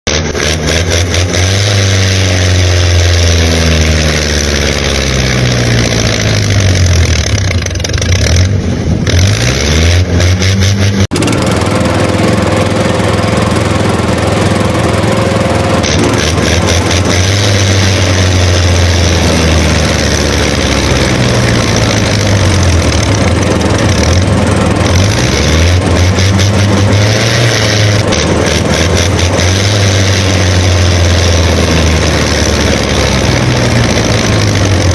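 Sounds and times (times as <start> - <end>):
engine running and revving: 0.0 - 34.9.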